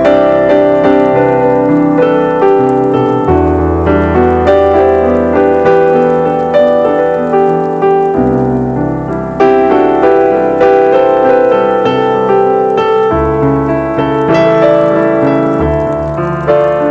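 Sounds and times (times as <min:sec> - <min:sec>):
slow piano music: 0:00.0 - 0:16.9.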